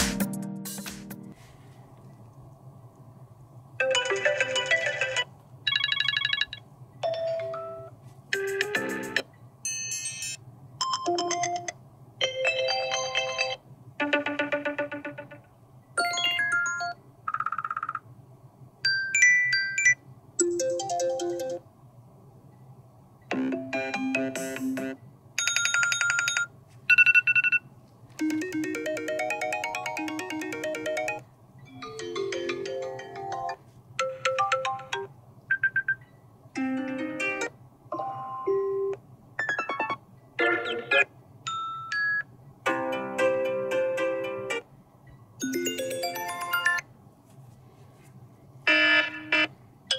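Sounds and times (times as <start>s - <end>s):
faint low hum: 1.2s - 9.7s
electronic ringtone melodies and chimes: 3.8s - 15.4s, 16.0s - 17.9s, 18.8s - 21.6s, 28.2s - 36.0s, 36.6s - 40.0s, 40.6s - 44.6s, 45.4s - 46.9s.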